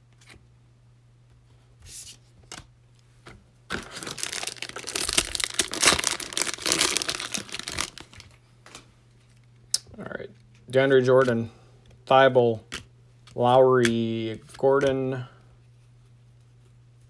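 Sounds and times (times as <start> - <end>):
foil wrapper tearing and crinkling: 3.7 - 8.3
wrapper handling rustles: 3.7 - 8.8.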